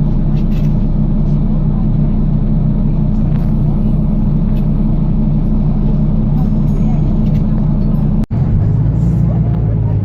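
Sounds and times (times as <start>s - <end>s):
bus engine rumble: 0.0s - 10.0s.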